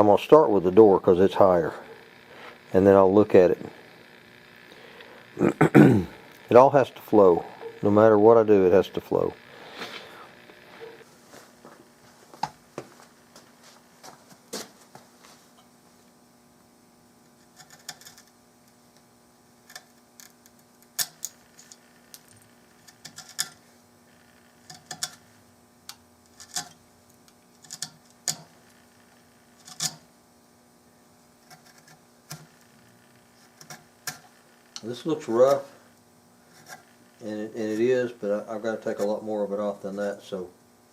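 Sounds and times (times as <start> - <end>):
chisel cutting wood: 36.5 - 37.0.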